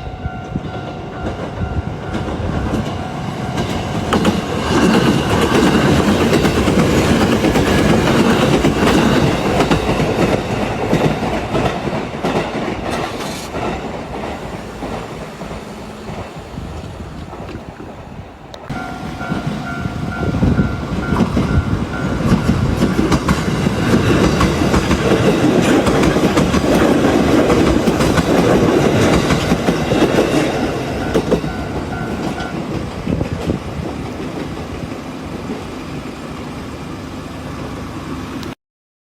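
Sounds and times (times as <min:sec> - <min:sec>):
crossing warning bell ringing: 0:00.0 - 0:11.8, 0:18.7 - 0:25.6, 0:28.6 - 0:33.0
train wheels clattering over rails: 0:00.5 - 0:17.8, 0:18.7 - 0:36.1.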